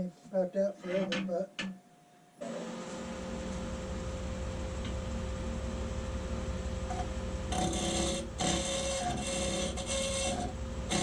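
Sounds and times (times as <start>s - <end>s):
wood lathe running: 2.4s - 11.0s
turning tool cutting wood: 6.9s - 11.0s.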